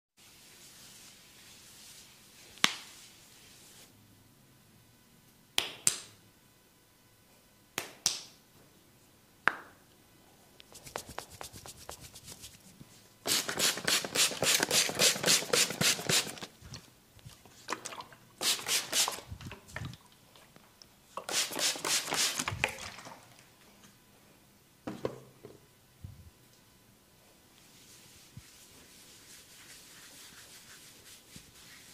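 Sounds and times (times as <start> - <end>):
sharp hand snaps: 5.6 - 6.2, 7.8 - 8.4
rapid hand tapping and slapping: 10.7 - 12.6.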